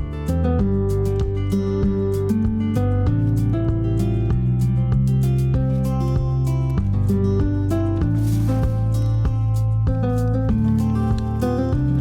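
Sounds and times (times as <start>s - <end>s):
bass line: 0.0s - 12.0s
plucked guitar: 0.0s - 12.0s.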